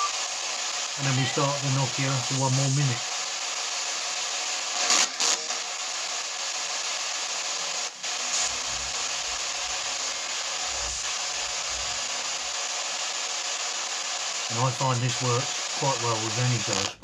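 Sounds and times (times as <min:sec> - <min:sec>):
static hiss: 0:00.0 - 0:17.0.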